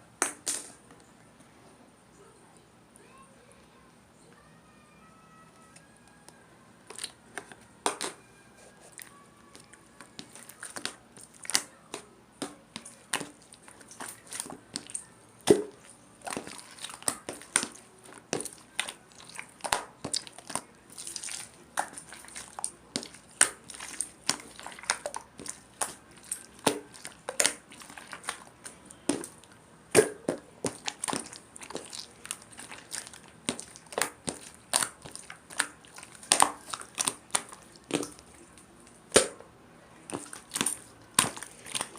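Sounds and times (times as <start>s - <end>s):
crinkling handling noises: 40.0s - 41.9s.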